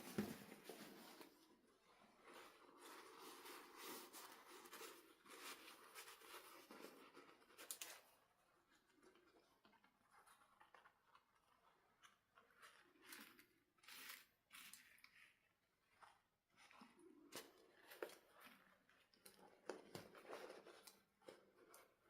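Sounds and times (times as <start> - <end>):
objects rustling and clicking: 0.0 - 1.4.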